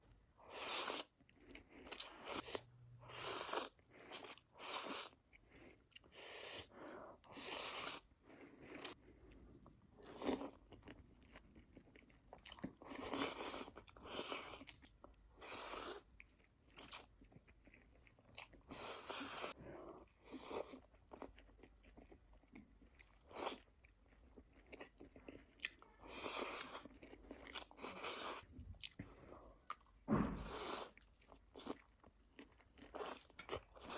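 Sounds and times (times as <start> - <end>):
person chewing noodles: 0.0 - 33.9.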